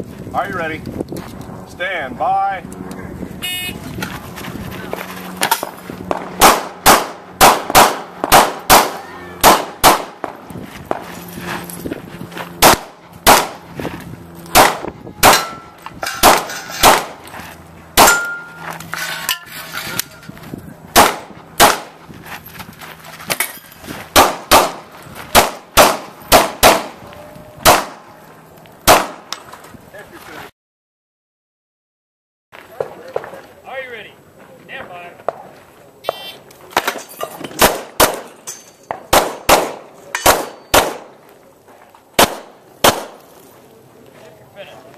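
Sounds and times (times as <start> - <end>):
pistol shots: 5.4 - 11.0, 12.6 - 13.6, 14.5 - 17.2, 18.0 - 18.5, 20.9 - 22.0, 24.1 - 27.0, 27.6 - 28.1, 28.8 - 29.4, 37.6 - 38.3, 38.9 - 41.2, 42.2 - 43.2
bullets clanging on steel targets: 15.2 - 17.3, 18.0 - 20.4, 23.3 - 23.8, 36.7 - 39.0, 40.0 - 40.8.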